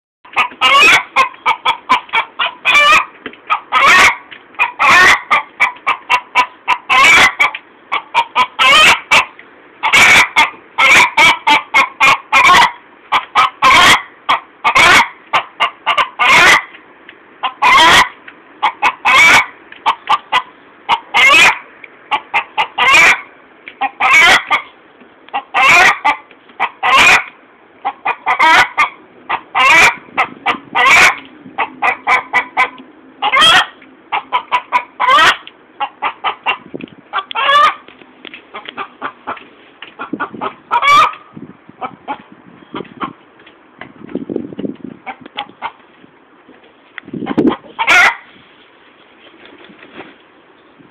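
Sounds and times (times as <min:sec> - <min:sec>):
hen clucking and squawking: 0:00.3 - 0:16.8, 0:17.4 - 0:46.1, 0:47.0 - 0:50.9.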